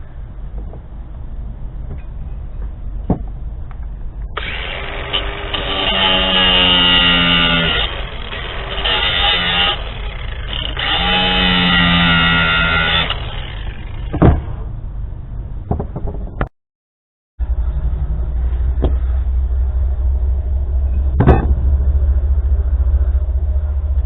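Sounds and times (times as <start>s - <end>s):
electric motor whine: 4.3s - 14.2s.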